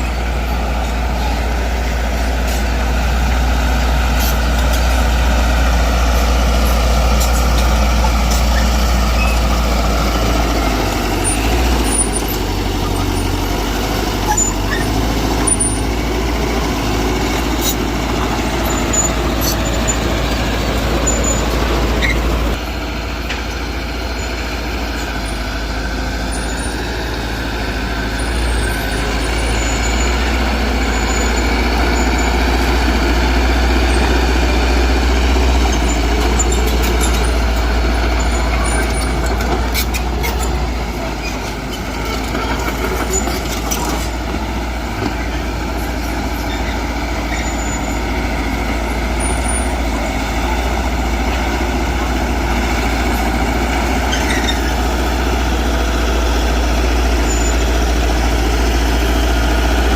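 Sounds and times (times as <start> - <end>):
diesel machinery engine rumble: 0.0 - 59.9
short high squeaks: 6.7 - 9.7, 14.2 - 15.9, 54.0 - 54.8.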